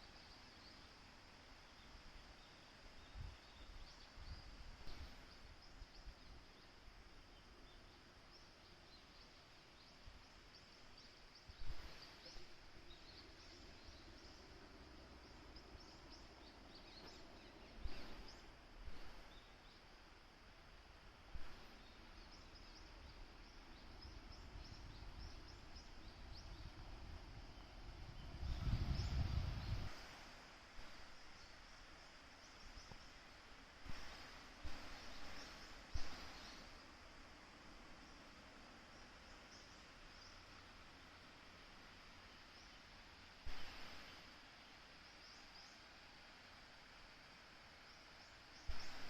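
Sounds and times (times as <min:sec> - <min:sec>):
steady soft hiss: 0:00.0 - 0:49.0
small bird chirping: 0:27.6 - 0:33.2, 0:33.8 - 0:36.9, 0:47.8 - 0:49.0
rush of running water: 0:28.4 - 0:38.9, 0:39.9 - 0:45.2.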